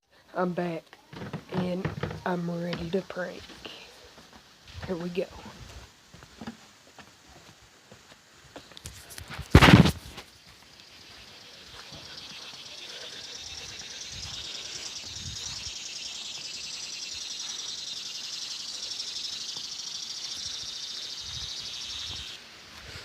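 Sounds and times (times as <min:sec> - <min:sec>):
high-pitched insect buzzing: 0:10.9 - 0:22.4.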